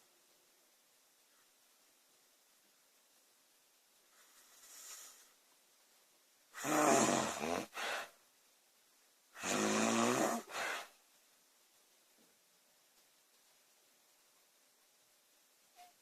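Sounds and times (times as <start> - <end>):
woman snoring loudly: 6.6 - 7.9, 9.4 - 10.8.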